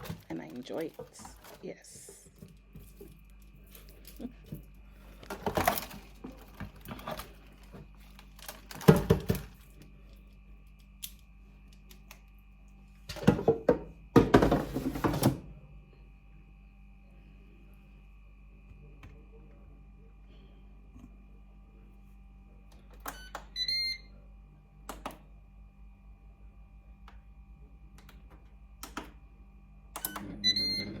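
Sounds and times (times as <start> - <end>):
knocking and rustling of handled objects: 0.0 - 9.9
faint steady hum: 0.0 - 31.0.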